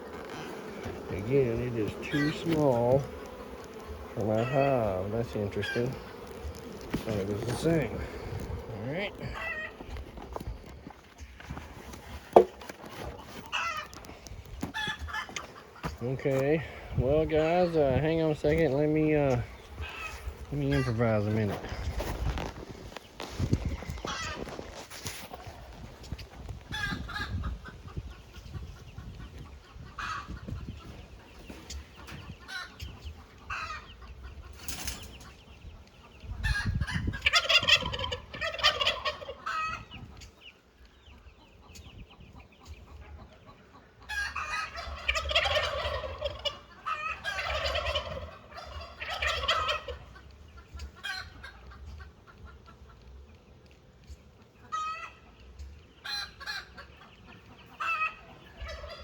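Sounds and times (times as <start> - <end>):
poultry pulsing call: 0.0 - 11.6, 12.3 - 22.5, 36.4 - 40.4, 41.1 - 53.1, 54.6 - 59.0.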